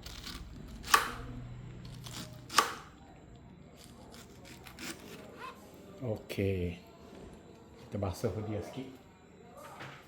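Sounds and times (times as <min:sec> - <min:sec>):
knife chopping pineapple: 0:00.0 - 0:01.4, 0:02.0 - 0:03.0, 0:03.8 - 0:05.6.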